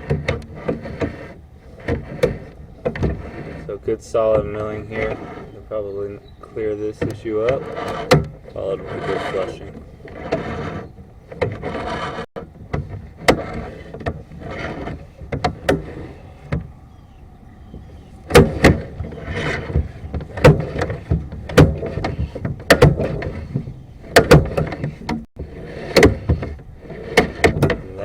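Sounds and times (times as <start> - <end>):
cable rubbing and scraping: 0.0 - 28.0
cable knocking and clicking: 17.7 - 25.3.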